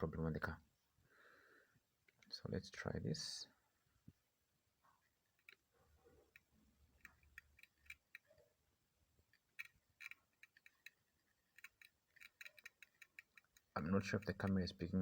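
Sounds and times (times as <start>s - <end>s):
faint irregular clicking: 2.0s - 2.4s, 4.8s - 15.0s.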